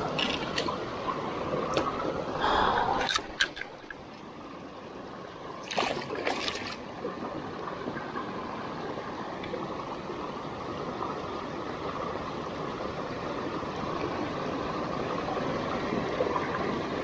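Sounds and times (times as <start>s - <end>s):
stream water running and trickling: 0.0s - 17.0s
water splashing: 5.6s - 6.9s.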